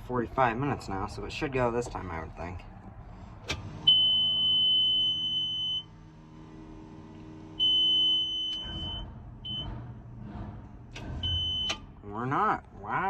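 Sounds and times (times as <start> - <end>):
low machine hum: 0.0 - 13.0
warning buzzer beeping: 7.6 - 9.7.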